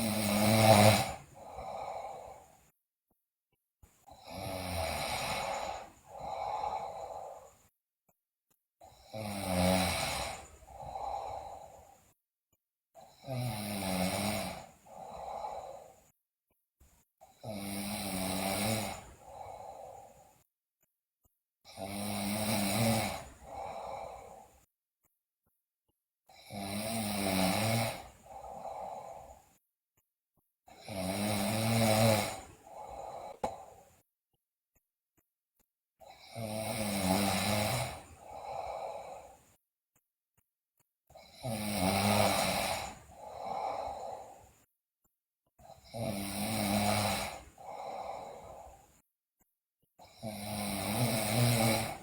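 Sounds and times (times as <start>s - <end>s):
girl snoring loudly: 0.0s - 2.6s, 4.1s - 7.6s, 8.8s - 12.0s, 13.0s - 16.1s, 17.3s - 20.2s, 21.7s - 24.6s, 26.3s - 29.4s, 30.7s - 33.8s, 36.0s - 39.4s, 41.1s - 44.5s, 45.6s - 48.8s, 50.0s - 52.0s.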